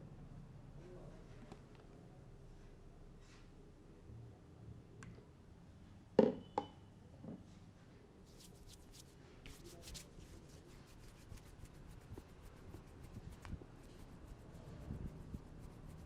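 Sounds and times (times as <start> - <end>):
light crackling strokes: 8.3 - 16.0.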